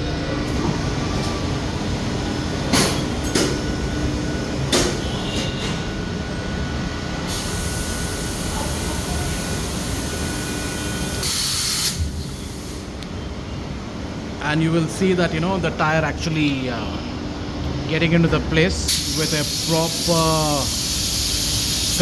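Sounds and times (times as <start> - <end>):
loud air hiss: 7.2 - 13.0, 18.9 - 22.0.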